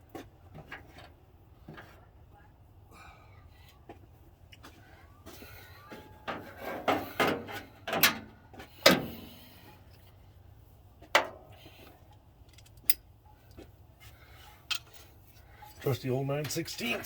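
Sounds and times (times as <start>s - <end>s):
hand tools clanking and rattling: 6.3s - 8.2s.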